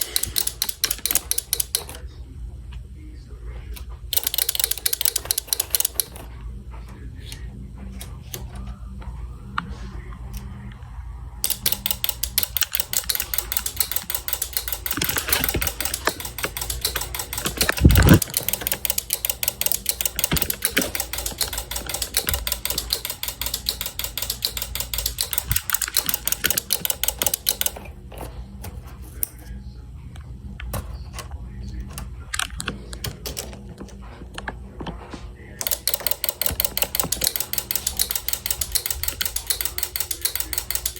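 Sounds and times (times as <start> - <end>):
fast mechanical clicks: 0.0 - 2.0, 4.1 - 6.3, 11.4 - 29.4, 30.6 - 34.6, 35.6 - 40.9
steady low hum: 0.0 - 40.9.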